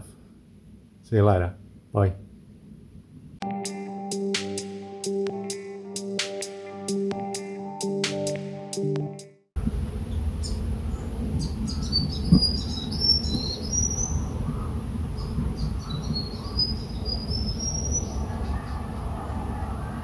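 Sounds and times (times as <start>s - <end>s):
steady low rumble: 9.6s - 20.0s
small birds chirping: 10.0s - 19.1s.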